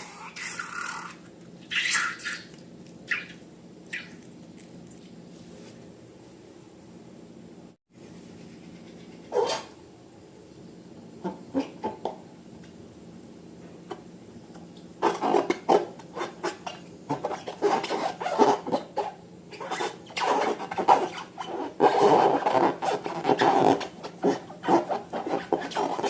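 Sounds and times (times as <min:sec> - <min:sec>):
slime squelching and rubbing: 0:19.6 - 0:26.0.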